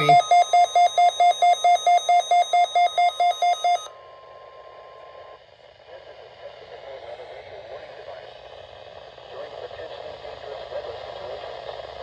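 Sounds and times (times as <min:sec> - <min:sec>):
rapid alarm beeping: 0:00.0 - 0:05.4
faint radio hiss: 0:04.1 - 0:12.0.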